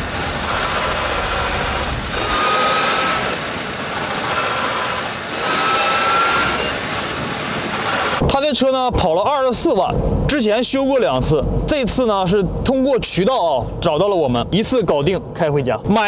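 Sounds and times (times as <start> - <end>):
transmission whining: 0.0 - 8.4
road noise: 0.0 - 16.0.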